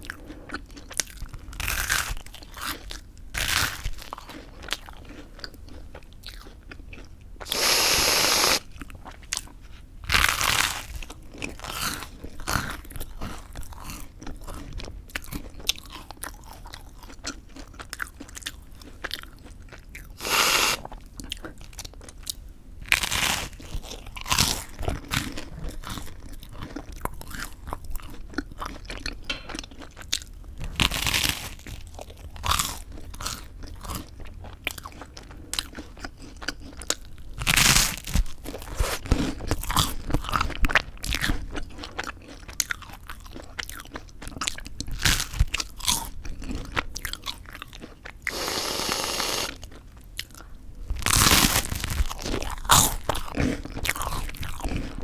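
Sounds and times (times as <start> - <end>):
toast crunching while chewed: 0.0 - 55.0
steady hiss: 7.5 - 8.6, 48.3 - 49.5.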